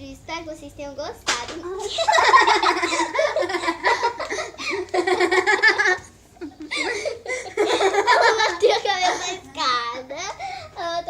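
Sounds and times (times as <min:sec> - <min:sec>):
girls laughing: 0:01.8 - 0:09.5.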